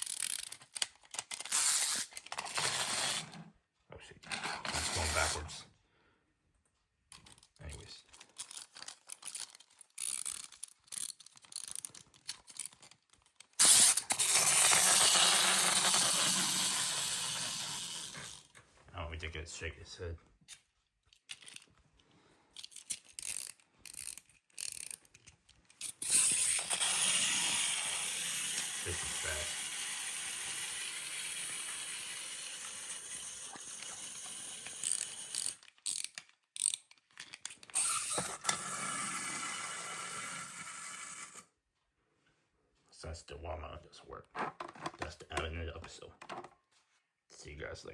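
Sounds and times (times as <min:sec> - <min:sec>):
clockwork motor whirring: 0:00.0 - 0:03.4, 0:04.4 - 0:05.5, 0:13.6 - 0:18.6, 0:25.8 - 0:36.8, 0:37.6 - 0:41.5
clockwork clicks: 0:13.6 - 0:18.4, 0:25.8 - 0:36.8.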